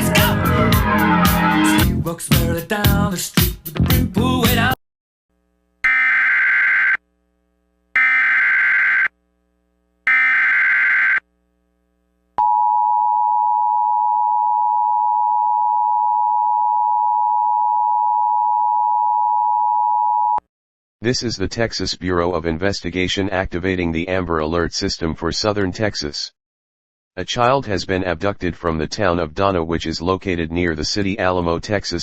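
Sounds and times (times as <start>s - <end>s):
buzzing digital data tones: 10.1s - 11.2s.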